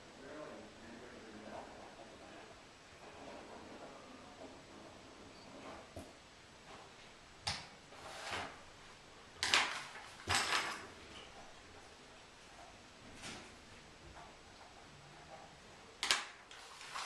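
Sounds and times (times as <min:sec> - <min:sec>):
short scraping sliding sounds: 0:08.0 - 0:08.6.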